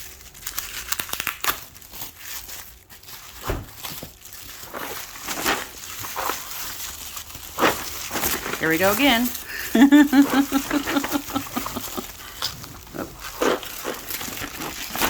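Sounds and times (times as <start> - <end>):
plastic packaging crinkling: 0.0 - 15.0
handling scrapes and knocks: 7.4 - 9.5, 10.5 - 15.0.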